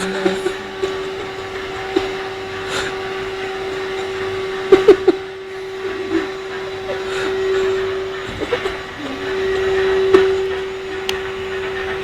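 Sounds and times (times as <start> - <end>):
vacuum cleaner motor whine: 0.0 - 12.0.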